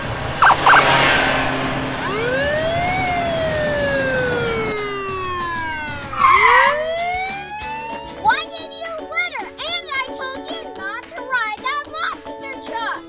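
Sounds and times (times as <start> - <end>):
police siren wailing: 0.0 - 8.7
short loud siren burst: 0.3 - 8.2.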